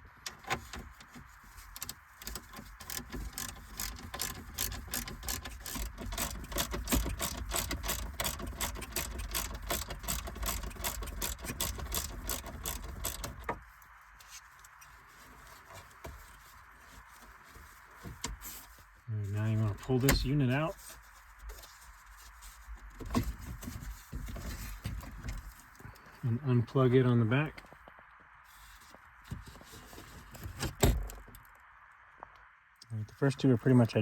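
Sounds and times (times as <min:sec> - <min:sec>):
ratchet clicking rapidly: 0:02.2 - 0:13.5.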